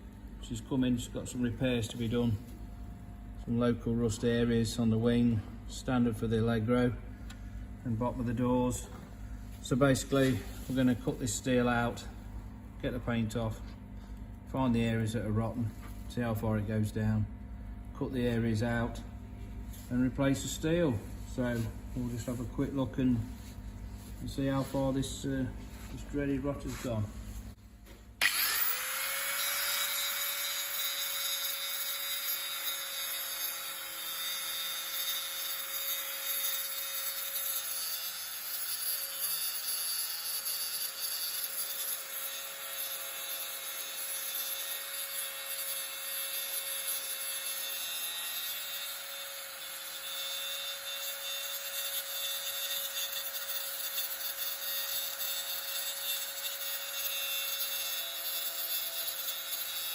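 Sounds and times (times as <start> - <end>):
power grinder whining: 28.2 - 59.9.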